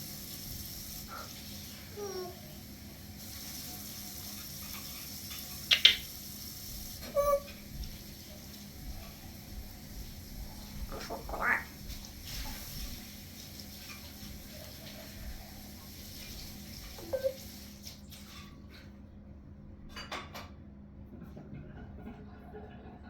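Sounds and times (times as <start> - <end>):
parrot calls: 5.7 - 6.1, 7.0 - 7.7, 10.7 - 12.6.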